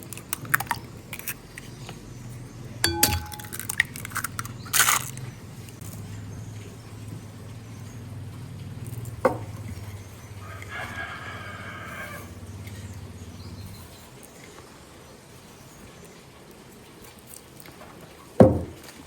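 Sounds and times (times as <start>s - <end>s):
rooster crowing: 10.4s - 12.4s.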